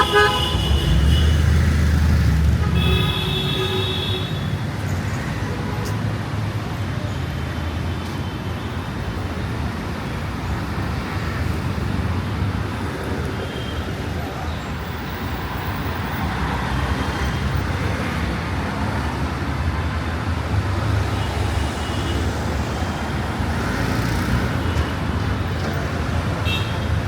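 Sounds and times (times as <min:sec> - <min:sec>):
car horn honking: 0:00.0 - 0:01.5, 0:02.6 - 0:04.6
steady traffic noise: 0:00.0 - 0:27.0.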